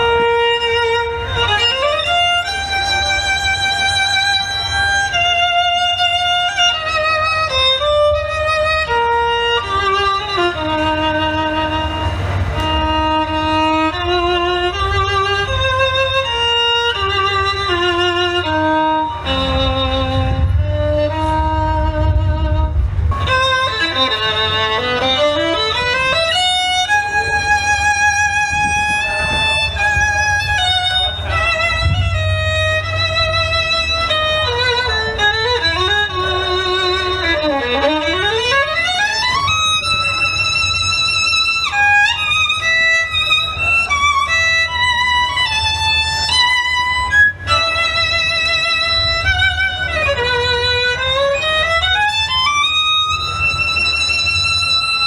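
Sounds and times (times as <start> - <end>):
solo violin melody: 0.0 - 55.0.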